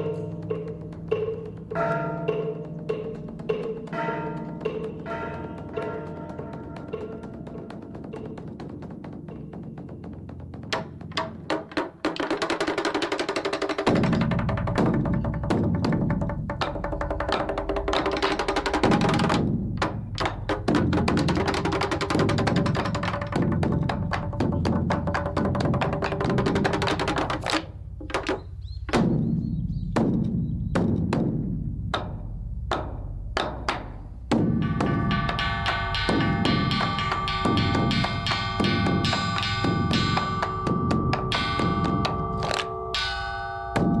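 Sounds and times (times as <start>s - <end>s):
rapid struck percussion: 0.0s - 44.0s
sustained ringing tones: 34.6s - 44.0s.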